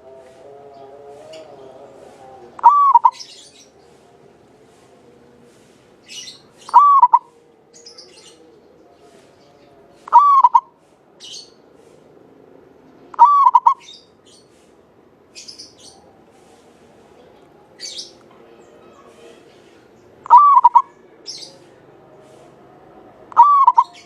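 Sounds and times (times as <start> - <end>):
dove cooing: 0.8 - 3.4, 6.7 - 7.4, 10.1 - 10.8, 13.2 - 13.8, 20.2 - 21.0, 23.3 - 24.0
faint high bird chirps: 2.6 - 3.7, 6.1 - 8.4, 10.1 - 11.6, 13.1 - 14.5, 20.2 - 21.6, 23.3 - 24.0.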